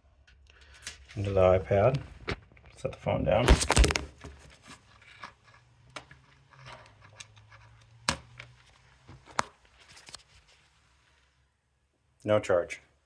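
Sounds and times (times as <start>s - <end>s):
phone and cable handling clicks: 3.4s - 10.2s.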